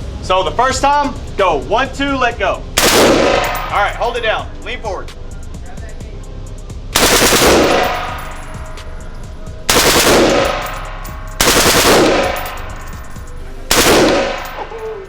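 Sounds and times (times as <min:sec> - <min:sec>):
automatic rifle firing bursts: 0:02.8 - 0:03.8, 0:07.0 - 0:08.6, 0:09.7 - 0:13.0, 0:13.7 - 0:14.8
gunshot echo indoors: 0:13.7 - 0:14.9.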